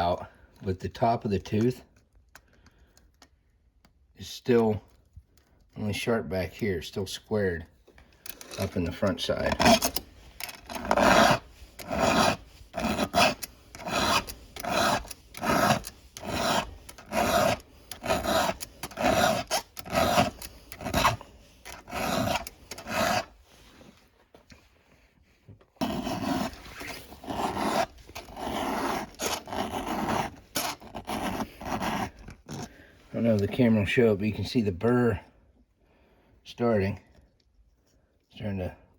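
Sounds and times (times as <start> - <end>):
hand file scraping chain tooth: 8.3 - 23.7, 25.8 - 33.6.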